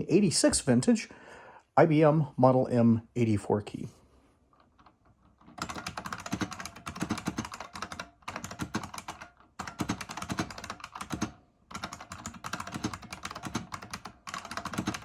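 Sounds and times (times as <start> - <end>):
buckling-spring keyboard clacks: 4.6 - 15.0.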